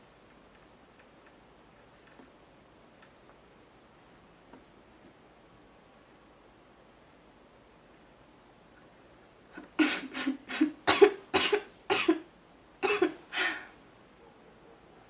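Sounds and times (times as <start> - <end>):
woman coughing: 9.8 - 13.7.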